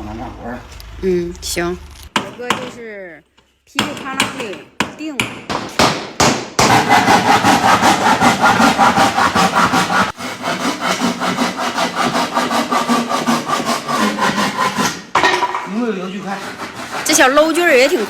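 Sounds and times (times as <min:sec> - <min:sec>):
hand saw cutting wood: 0:06.6 - 0:15.1, 0:16.0 - 0:18.0.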